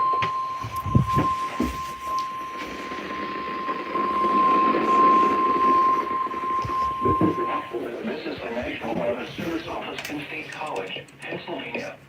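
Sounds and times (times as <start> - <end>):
warning alarm tone: 0.0 - 9.8
low thumps: 0.2 - 7.8
radio static: 0.8 - 12.0.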